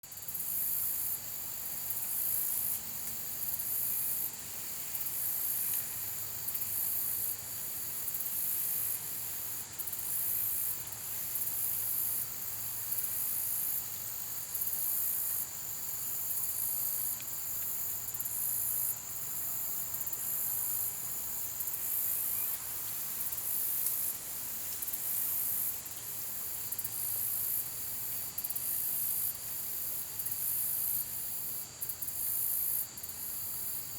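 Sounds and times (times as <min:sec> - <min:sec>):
crickets chirping: 0:00.0 - 0:33.9.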